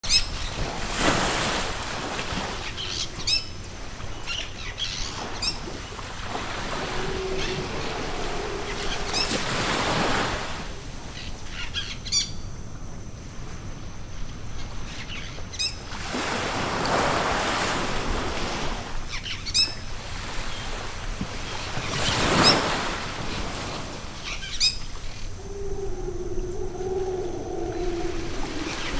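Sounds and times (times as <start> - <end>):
sea waves breaking on a beach: 0.0 - 11.7, 13.1 - 28.9
low wavering call: 6.6 - 10.9, 25.4 - 28.9.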